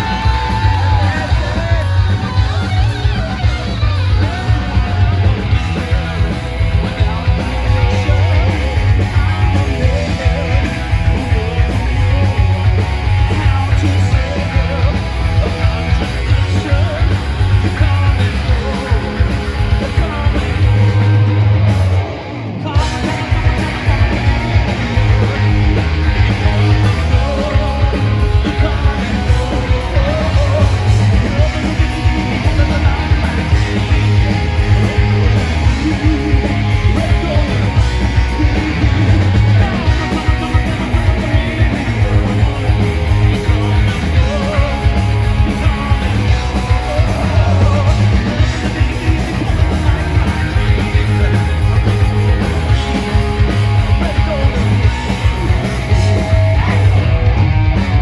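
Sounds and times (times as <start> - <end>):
person singing: 0.0 - 21.3, 22.5 - 57.3
punk rock electric guitars: 0.0 - 58.0.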